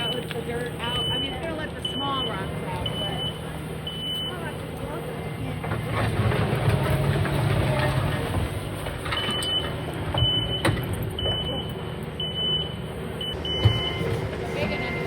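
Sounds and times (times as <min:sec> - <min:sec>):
vehicle backup alarm beeping: 0:00.0 - 0:05.7, 0:09.0 - 0:15.0
low engine rumble: 0:00.0 - 0:15.0.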